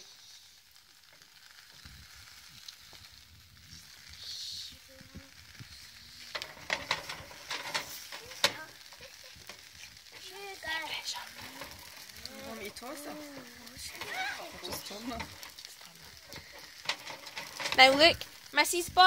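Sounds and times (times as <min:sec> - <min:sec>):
batter sizzling in frying pan: 0:00.0 - 0:19.0
sharp clicks and scrapes: 0:05.6 - 0:10.3, 0:11.0 - 0:12.5, 0:13.4 - 0:18.3.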